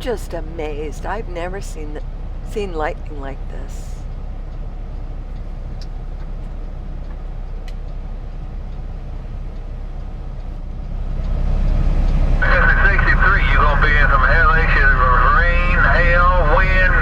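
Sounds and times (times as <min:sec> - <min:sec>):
diesel engine rumble: 0:00.0 - 0:17.0
road noise: 0:00.0 - 0:17.0.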